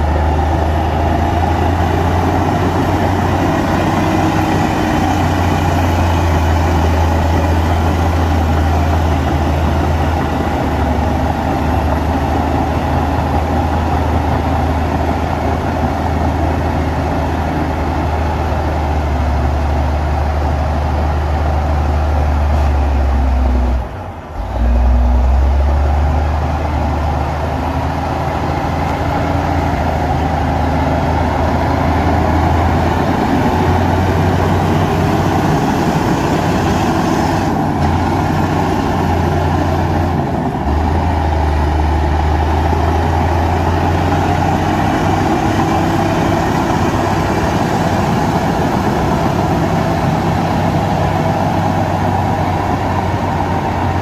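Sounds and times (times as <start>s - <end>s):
diesel machinery engine drone: 0.0s - 54.0s.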